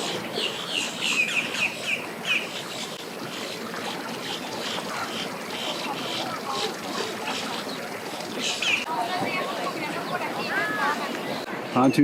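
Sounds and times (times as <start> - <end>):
bird chirping: 0.0 - 3.0, 7.3 - 8.9
steady background noise: 0.0 - 12.0.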